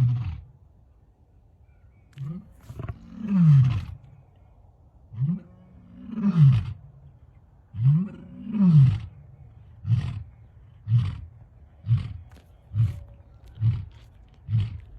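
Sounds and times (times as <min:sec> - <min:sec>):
lion grunting: 0:02.2 - 0:04.1, 0:09.8 - 0:14.9
lion roaring: 0:02.2 - 0:04.1.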